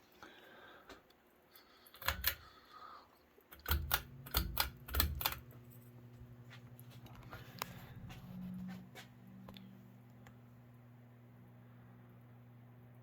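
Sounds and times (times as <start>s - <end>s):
fan motor humming: 1.9s - 2.7s, 3.5s - 13.0s
ceiling fan switch clicks: 3.6s - 5.5s.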